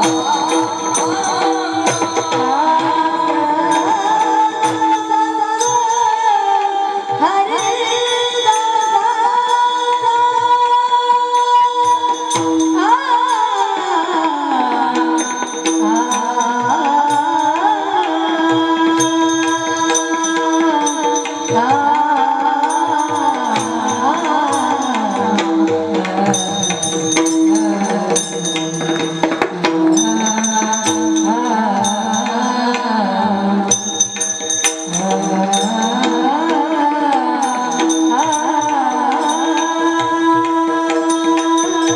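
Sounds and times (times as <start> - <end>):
hand drum: 0.0 - 41.9
person singing ornamented lines: 0.0 - 41.9
jingling tambourine: 19.0 - 32.9, 33.7 - 36.7, 37.4 - 41.9.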